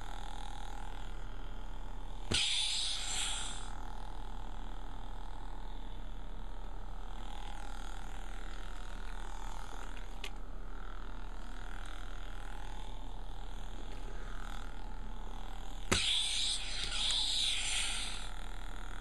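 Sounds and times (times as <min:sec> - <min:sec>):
toy lightsaber humming: 0:00.0 - 0:19.0
hissing burst: 0:02.3 - 0:03.6, 0:15.9 - 0:18.2.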